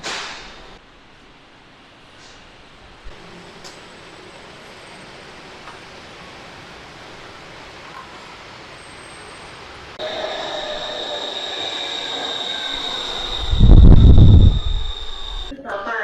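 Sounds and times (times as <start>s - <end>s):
electric train rumbling: 0.0s - 15.6s
high-pitched whine: 10.0s - 15.6s.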